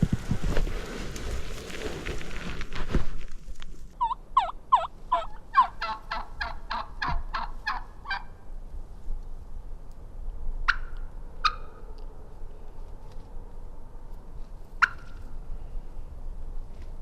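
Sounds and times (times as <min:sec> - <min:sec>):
turkey yelping: 0:04.0 - 0:08.3, 0:10.7 - 0:11.8.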